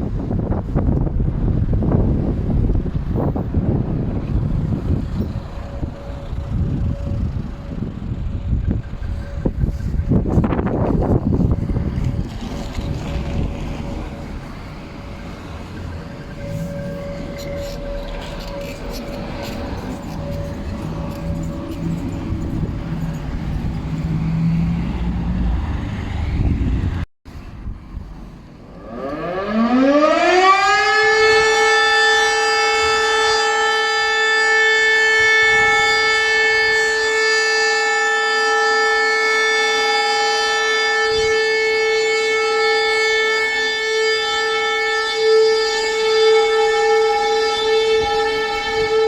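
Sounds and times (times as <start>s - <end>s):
alarm siren: 0.0s - 27.0s, 28.6s - 49.0s
low rumble: 0.0s - 29.0s.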